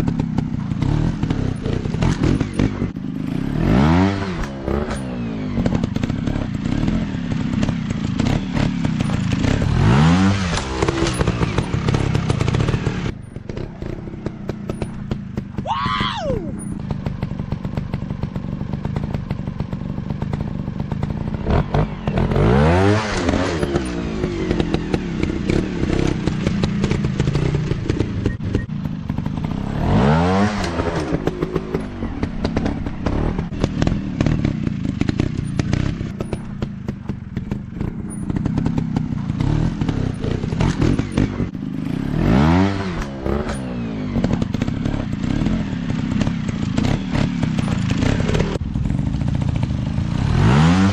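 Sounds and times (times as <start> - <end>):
dirt bike engines revving: 0.0 - 19.3, 21.0 - 50.9
knocks and clatter: 30.5 - 41.5.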